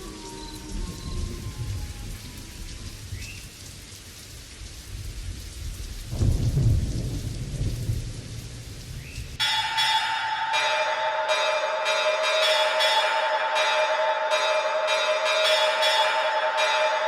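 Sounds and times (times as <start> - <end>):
low rumble of thunder: 0.0 - 9.4
steady rain: 0.0 - 17.0.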